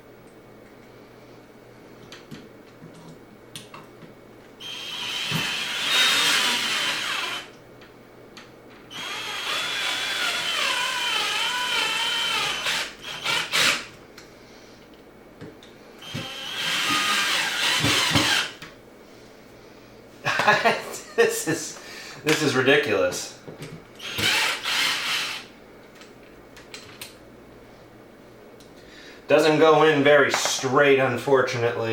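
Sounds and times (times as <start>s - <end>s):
power drill driving screws: 4.6s - 7.5s, 8.9s - 13.9s, 16.0s - 18.6s, 24.0s - 25.5s.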